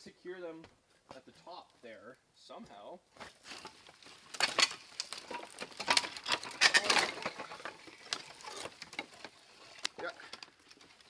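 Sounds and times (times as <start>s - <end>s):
dry branches rustling and crackling: 3.1s - 11.0s.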